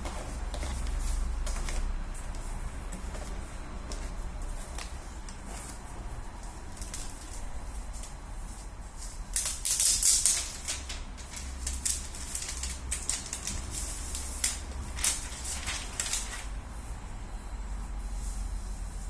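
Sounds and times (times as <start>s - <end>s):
laptop and packaging handled: 0.0s - 8.2s, 9.0s - 16.6s
steady low hum: 0.0s - 19.0s.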